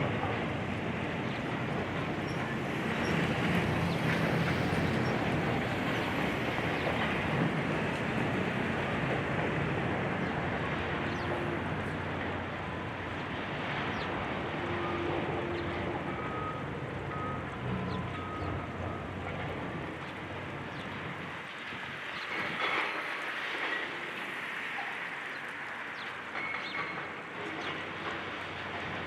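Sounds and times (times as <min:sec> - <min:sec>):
heavy diesel machinery rumbling: 0:00.0 - 0:22.9.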